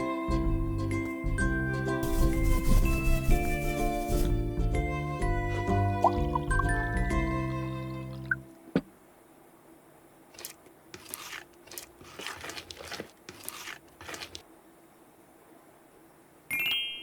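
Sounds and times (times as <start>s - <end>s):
crinkling rustling noises: 2.0s - 4.5s, 10.3s - 14.5s.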